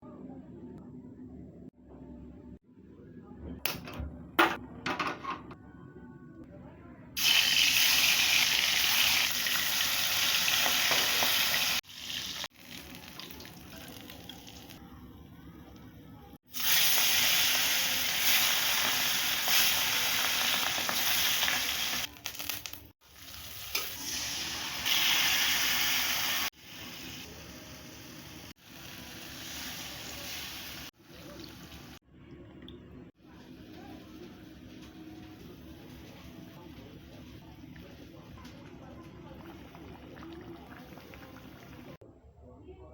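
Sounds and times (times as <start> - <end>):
food sizzling in hot oil: 7.2 - 14.8, 16.5 - 32.0.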